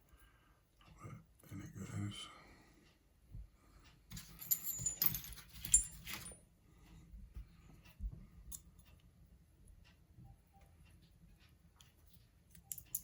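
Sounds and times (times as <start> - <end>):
lock parts and key clinking: 4.1 - 6.5, 11.8 - 13.0.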